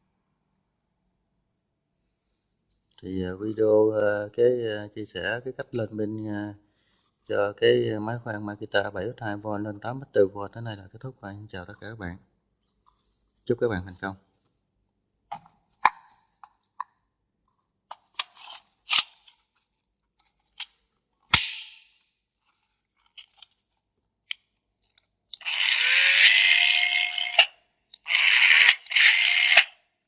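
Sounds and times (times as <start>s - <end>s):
cordless drill motor whining: 25.4s - 29.7s.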